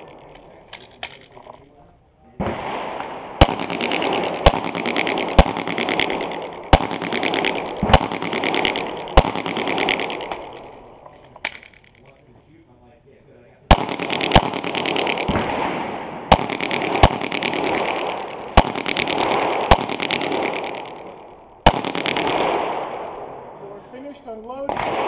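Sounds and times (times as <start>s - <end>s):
pistol shots: 2.4s - 11.6s, 13.7s - 23.6s, 24.6s - 25.0s.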